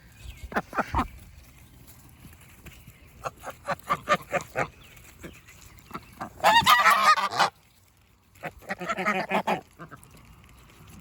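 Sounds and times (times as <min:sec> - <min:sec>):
geese honking: 0:06.2 - 0:07.7, 0:08.4 - 0:10.0.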